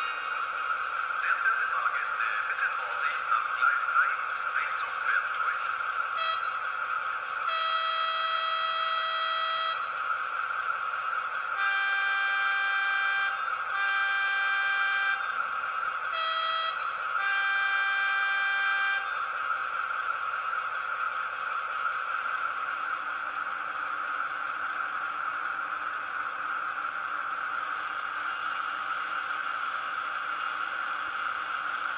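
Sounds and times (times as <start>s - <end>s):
diesel engine idling: 0.0s - 31.9s
model train horn blasts: 6.1s - 6.7s, 7.4s - 10.0s, 11.5s - 15.5s, 16.1s - 19.3s.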